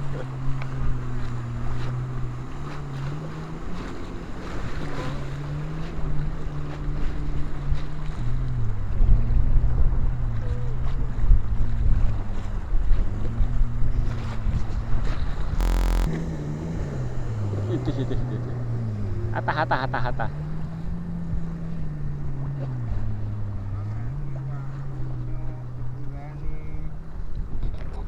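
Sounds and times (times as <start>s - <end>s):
boat engine running: 0.0s - 26.2s.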